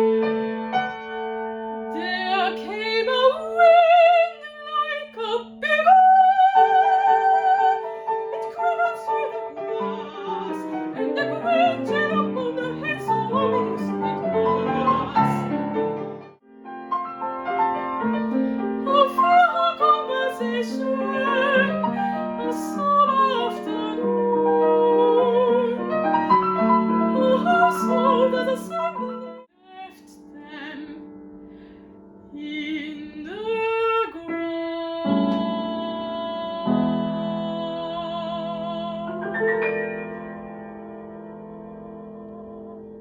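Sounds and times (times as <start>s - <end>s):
piano accompaniment: 0.0s - 43.0s
soprano singing with vibrato: 1.9s - 15.6s, 18.8s - 26.0s, 27.1s - 31.0s, 32.3s - 40.1s.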